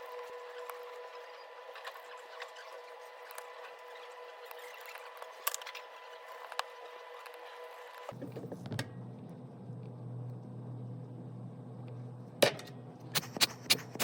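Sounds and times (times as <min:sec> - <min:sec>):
low steady hum: 0:08.1 - 0:14.0.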